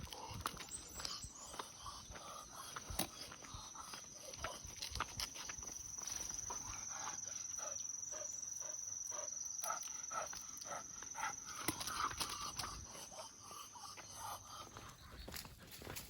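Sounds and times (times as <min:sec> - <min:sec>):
footsteps on walk: 0:00.0 - 0:07.7, 0:09.6 - 0:16.0
dog panting: 0:06.4 - 0:16.0.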